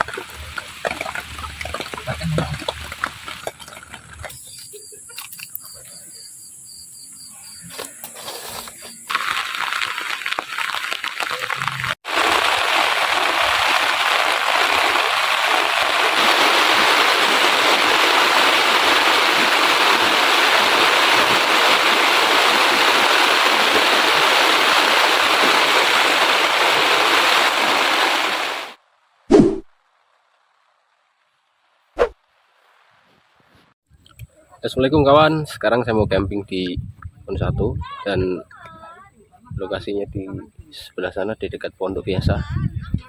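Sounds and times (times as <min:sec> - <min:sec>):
heavy rain pouring: 0:00.0 - 0:04.9, 0:07.7 - 0:28.8.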